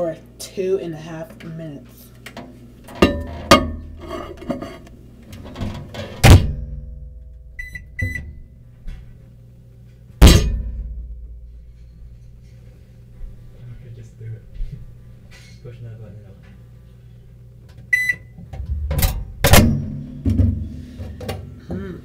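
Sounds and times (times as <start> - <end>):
microwave low hum: 0.0 - 22.0
keypad beeps: 17.9 - 18.3
clattering knocks: 18.4 - 21.4.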